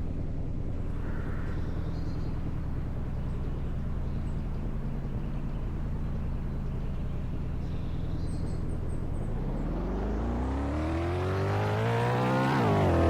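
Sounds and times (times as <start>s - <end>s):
car engine accelerating: 8.3s - 13.0s.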